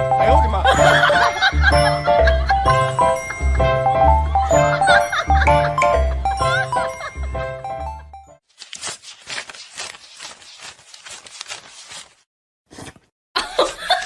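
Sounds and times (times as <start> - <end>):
person speaking: 0.0 - 1.4.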